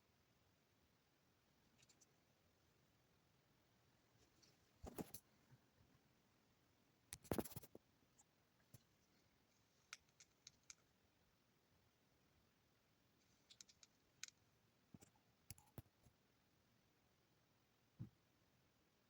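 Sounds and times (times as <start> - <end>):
faint clicks and taps: 7.1 - 7.9, 13.2 - 16.2.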